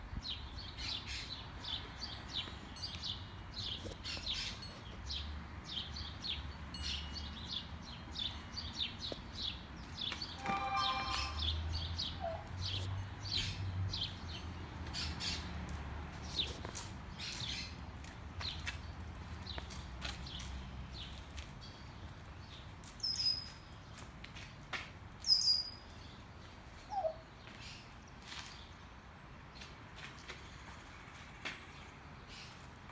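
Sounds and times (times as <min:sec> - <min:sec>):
songbirds chirping: 0:00.1 - 0:32.9.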